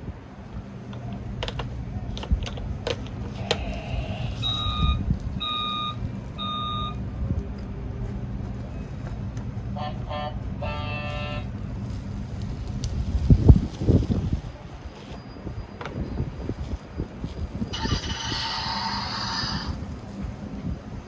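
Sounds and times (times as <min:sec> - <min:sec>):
toy truck electronic beeps: 0:03.4 - 0:07.0, 0:17.7 - 0:19.8.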